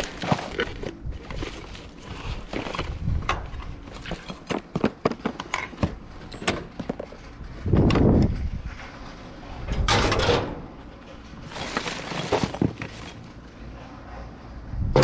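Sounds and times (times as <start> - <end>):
rustling scrape: 0.0 - 7.6, 11.1 - 13.9
items knocking in a dumpster: 11.4 - 13.4.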